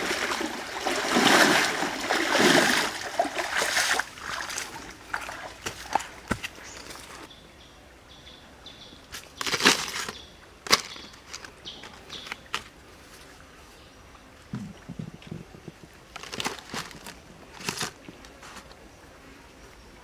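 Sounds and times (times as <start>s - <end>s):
water sloshing and splashing: 0.0s - 7.3s.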